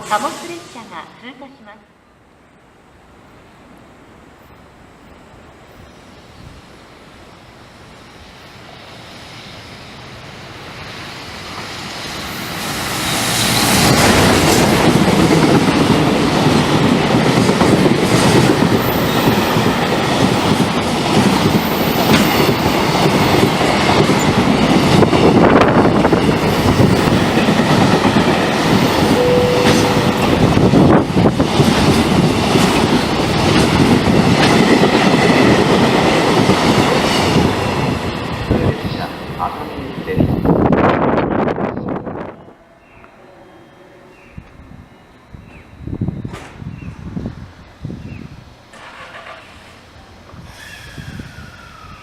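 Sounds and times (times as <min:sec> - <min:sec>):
freight train passing: 0:00.0 - 0:52.0
wheels clacking over rail joints: 0:48.7 - 0:49.8.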